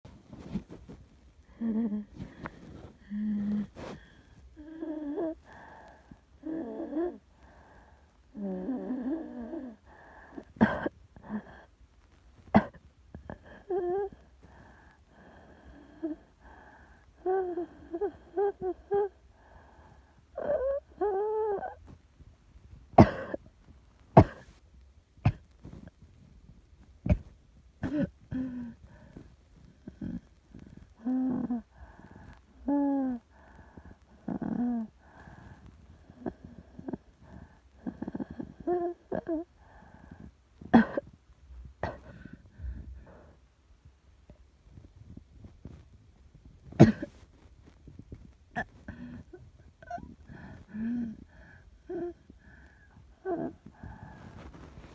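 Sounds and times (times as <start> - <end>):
wheezy breaths: 0.3 - 10.6, 47.0 - 54.9
person coughing: 10.6 - 10.9, 12.6 - 12.8, 23.0 - 23.4, 24.2 - 24.5, 27.8 - 28.1, 40.7 - 41.1, 41.8 - 42.3, 46.8 - 47.2.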